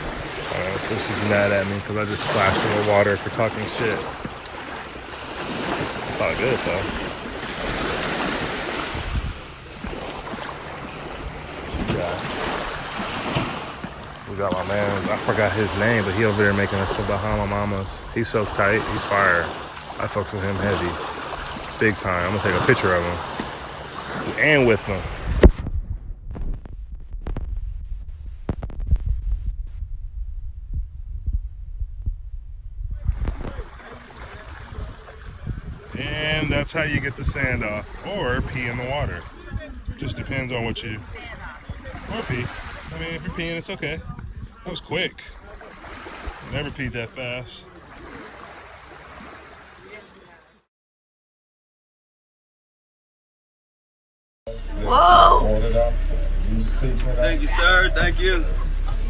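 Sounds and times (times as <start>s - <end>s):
wind buffeting microphone: 0.0s - 19.1s, 19.8s - 46.9s, 54.5s - 59.0s
waves washing on beach: 0.0s - 25.7s, 33.0s - 50.6s
rumbling and thumping on microphone: 8.9s - 10.5s, 24.7s - 34.0s, 34.6s - 38.6s, 44.0s - 44.6s, 54.5s - 59.0s
steady rushing noise: 24.4s - 33.6s, 54.5s - 59.0s.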